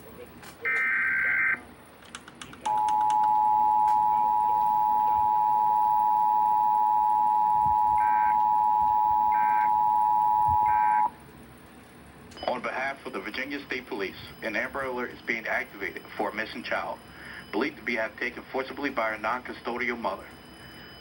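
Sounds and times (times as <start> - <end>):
two-tone alert tone: 2.7 - 11.1.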